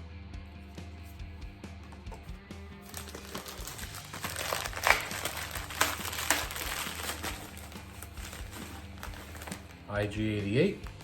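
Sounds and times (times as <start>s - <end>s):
plastic packaging crinkling: 2.8s - 10.0s.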